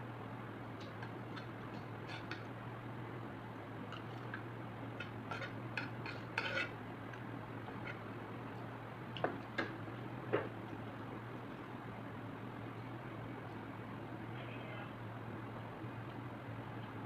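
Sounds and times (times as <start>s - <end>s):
cutlery clinking against a dish: 5.0s - 6.7s.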